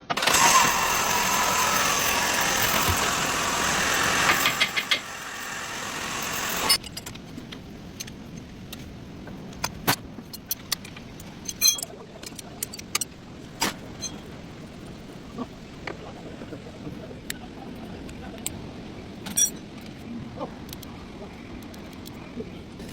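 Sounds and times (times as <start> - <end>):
harsh bearing noise: 0.0 - 6.8.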